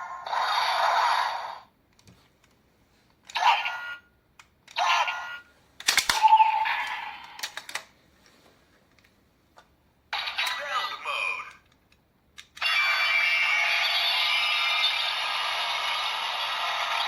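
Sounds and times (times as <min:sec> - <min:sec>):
toy speaker sound effects: 0:03.3 - 0:04.0, 0:06.1 - 0:07.4, 0:10.2 - 0:11.6, 0:12.6 - 0:15.1.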